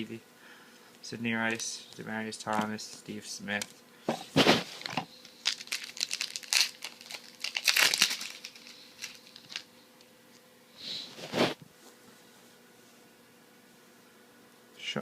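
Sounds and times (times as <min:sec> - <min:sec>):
foil wrapper tearing and crinkling: 0:04.4 - 0:09.7.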